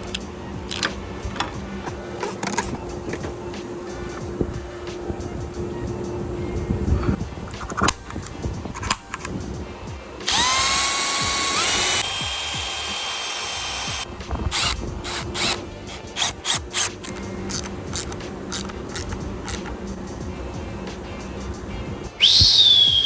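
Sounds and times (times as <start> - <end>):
ratcheting crimper clicks: 0.0 - 2.8, 7.5 - 9.6, 10.2 - 19.9
power drill whining: 10.2 - 17.2, 22.2 - 23.0.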